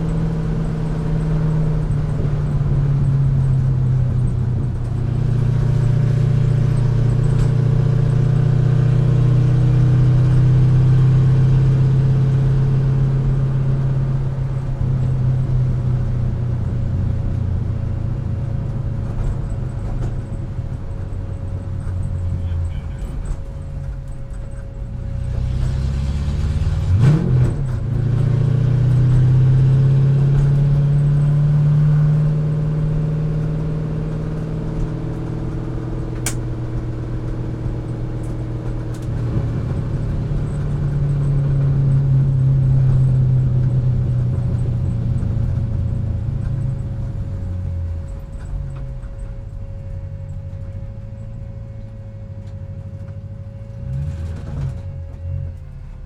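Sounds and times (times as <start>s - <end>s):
car engine revving: 0.0s - 56.0s
faint whine: 11.9s - 26.9s, 32.2s - 56.0s.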